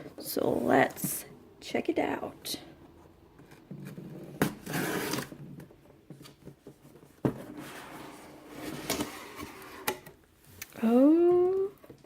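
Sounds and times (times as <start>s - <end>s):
cardboard rustling and scraping: 3.4s - 10.1s.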